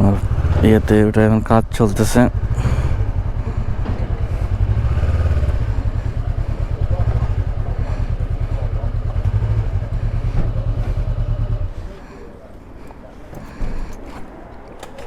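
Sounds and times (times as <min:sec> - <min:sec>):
motorcycle engine idling: 0:00.0 - 0:14.1.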